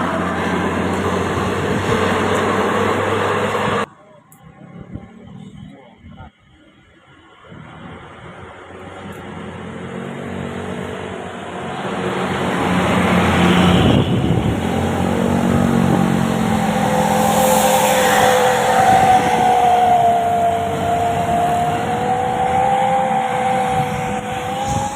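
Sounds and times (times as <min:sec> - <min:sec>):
bus engine and tyre noise: 0:00.0 - 0:24.9
air horn high tones: 0:12.7 - 0:24.9.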